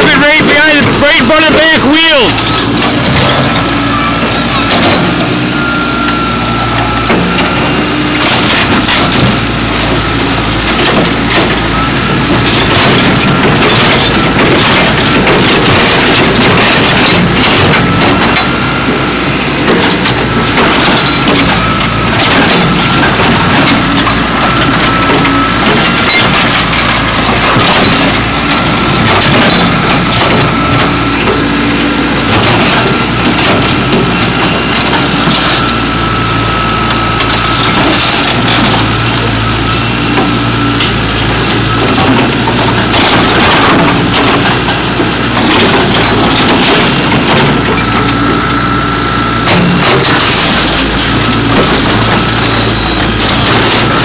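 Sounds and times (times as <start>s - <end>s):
backhoe engine running: 0.0s - 54.0s
sheet metal crunching: 19.6s - 48.8s.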